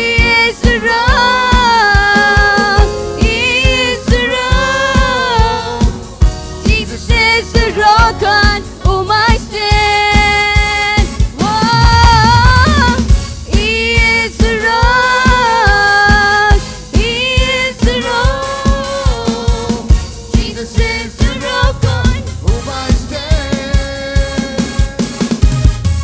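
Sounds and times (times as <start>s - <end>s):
melodic lead line: 0.0s - 11.4s
steady drum beat: 0.0s - 26.0s
worship band playing: 0.0s - 26.0s.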